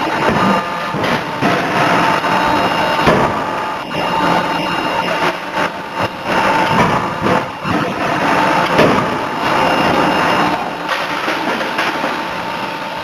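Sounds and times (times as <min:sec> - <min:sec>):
forging machinery din: 0:00.0 - 0:12.4
faint steady whine: 0:00.0 - 0:13.0
sharp knocks: 0:08.6 - 0:09.2.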